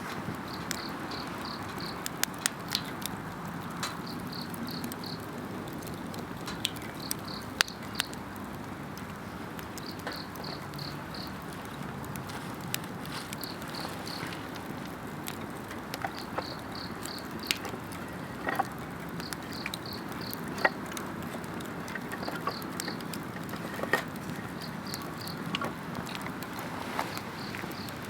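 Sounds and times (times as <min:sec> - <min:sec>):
campfire crackling and popping: 0:00.0 - 0:28.0
insects chirping: 0:00.4 - 0:02.2, 0:04.0 - 0:05.3, 0:06.8 - 0:08.2, 0:09.7 - 0:15.1, 0:15.8 - 0:28.0.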